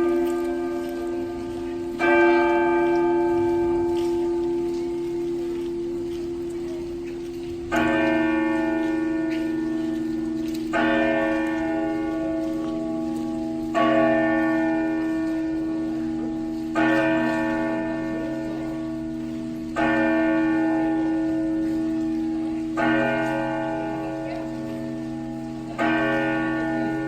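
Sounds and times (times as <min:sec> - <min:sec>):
church bell tolling: 0:00.0 - 0:27.0.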